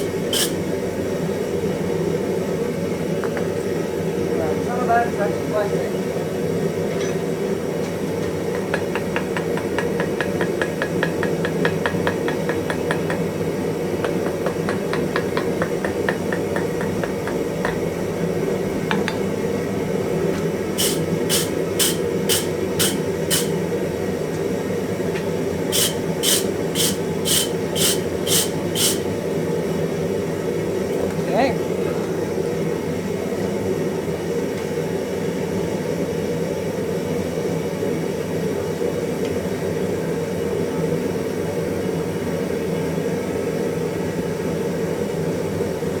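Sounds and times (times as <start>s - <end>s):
hard hammer blows on iron: 0.0s - 0.7s, 8.5s - 13.4s, 14.0s - 18.0s, 20.8s - 23.7s, 25.7s - 29.1s
light quick hammer taps: 14.0s - 17.9s.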